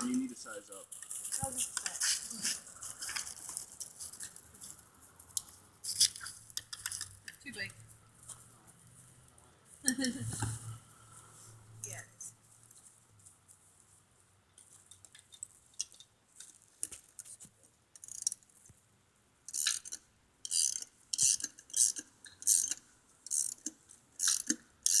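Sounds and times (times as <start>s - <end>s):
ratchet wrench rasping: 18.0s - 18.4s, 19.5s - 25.0s.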